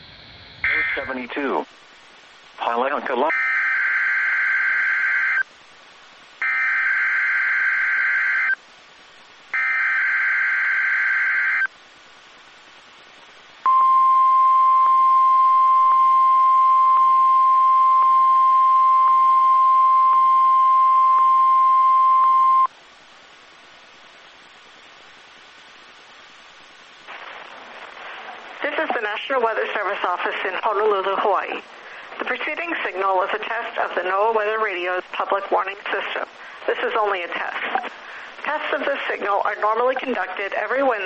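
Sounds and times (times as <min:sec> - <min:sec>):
steady warning alarm tone: 0:00.6 - 0:01.1, 0:03.3 - 0:05.4, 0:06.4 - 0:08.6.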